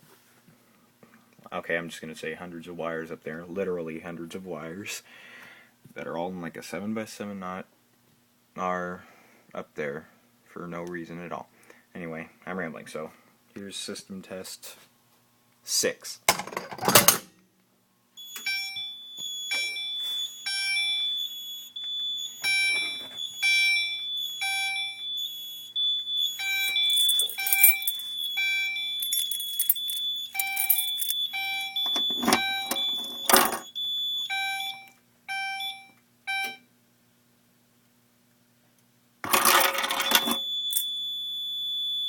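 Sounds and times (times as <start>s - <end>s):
pulsed fire alarm horns: 18.2s - 36.6s, 40.1s - 42.0s
steady high-pitched beep: 18.2s - 36.6s, 40.1s - 42.0s.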